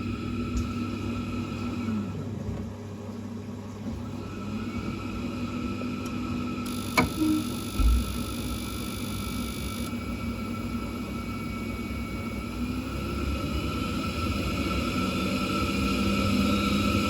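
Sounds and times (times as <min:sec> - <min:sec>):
boiler humming: 0:00.0 - 0:17.0
low thump: 0:07.8 - 0:08.2.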